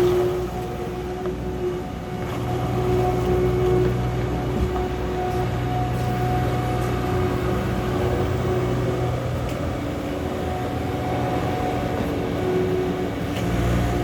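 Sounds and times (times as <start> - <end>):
diesel engine running: 0.0 - 14.0
high whine: 0.0 - 14.0.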